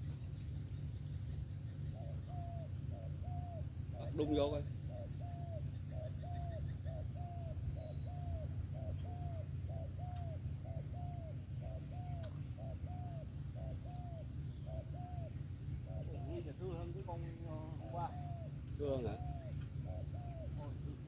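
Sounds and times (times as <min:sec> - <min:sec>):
steady low hum: 0:00.0 - 0:21.0
dove cooing: 0:01.7 - 0:21.0
sharp click: 0:12.2 - 0:12.4.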